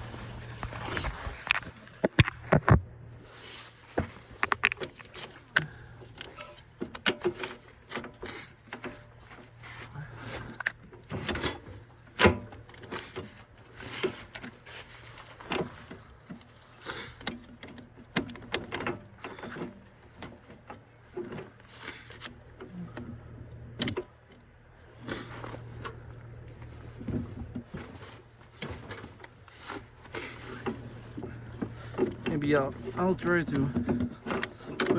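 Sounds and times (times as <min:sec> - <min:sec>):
metal clunks and scrapes: 0:00.0 - 0:24.2, 0:25.0 - 0:34.9
low steady hum: 0:17.7 - 0:34.9.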